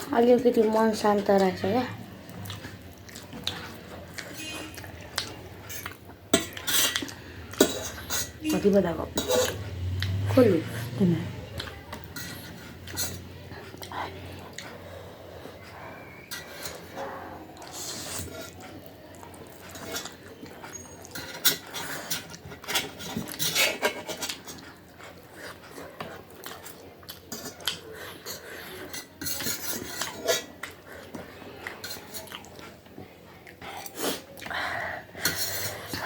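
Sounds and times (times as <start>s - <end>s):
utensils clicking against a dish: 19.7s - 24.7s, 27.1s - 30.8s.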